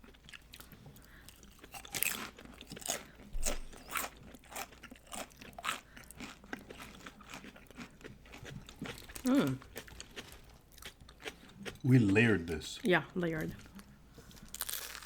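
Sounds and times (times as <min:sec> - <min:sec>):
tortilla chips crunching: 0:14.3 - 0:15.0.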